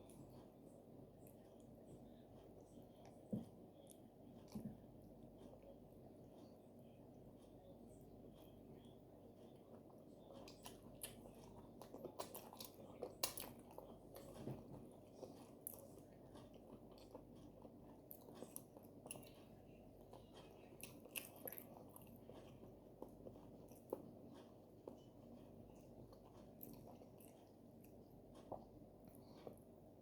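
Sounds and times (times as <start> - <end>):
person chewing food: 8.2 - 30.0.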